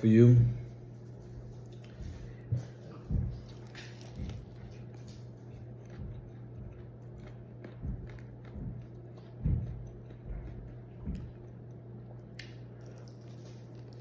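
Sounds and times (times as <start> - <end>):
crunchy chewing: 0.9 - 14.0
soft low thuds: 2.1 - 4.6, 7.8 - 11.5.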